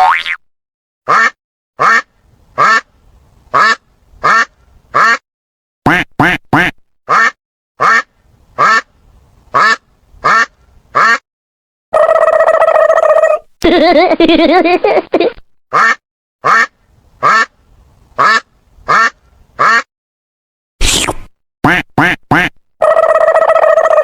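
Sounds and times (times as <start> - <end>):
duck quacking: 1.1 - 2.9, 3.5 - 5.2, 5.9 - 8.9, 9.5 - 11.2, 15.7 - 17.5, 18.2 - 19.9, 21.6 - 22.6.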